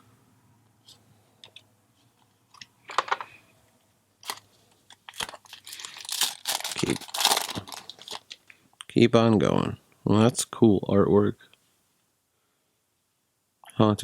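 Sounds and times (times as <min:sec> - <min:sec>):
cards clicking and rustling: 0:04.2 - 0:08.4
foil wrapper crinkling: 0:04.2 - 0:08.4.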